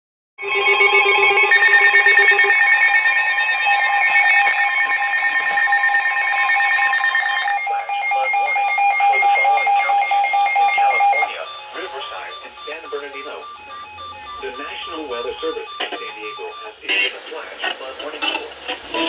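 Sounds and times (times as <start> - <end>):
steady alert tones: 0.4 - 17.2
buzzy digital header bursts: 7.3 - 17.6.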